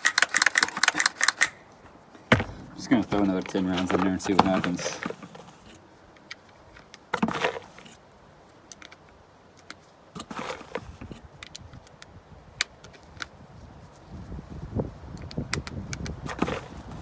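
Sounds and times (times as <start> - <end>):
cartridges clicking into magazine: 0.0 - 1.7
handling rattles: 0.0 - 5.5.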